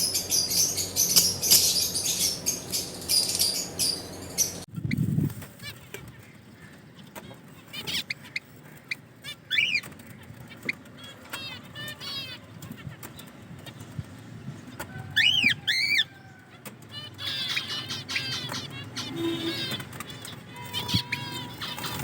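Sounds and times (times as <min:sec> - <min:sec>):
parakeets chattering: 0:00.0 - 0:04.7, 0:05.6 - 0:22.0
parakeets chirping: 0:00.0 - 0:04.9, 0:07.5 - 0:14.0, 0:16.9 - 0:22.0.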